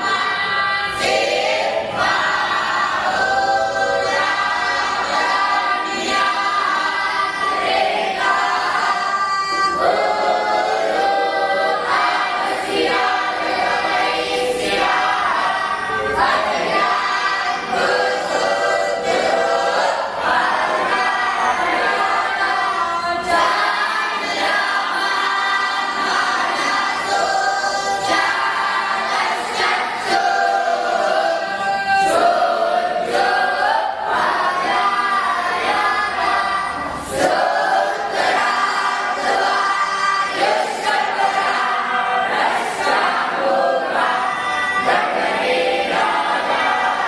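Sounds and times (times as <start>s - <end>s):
group chanting in unison: 0.0s - 47.0s.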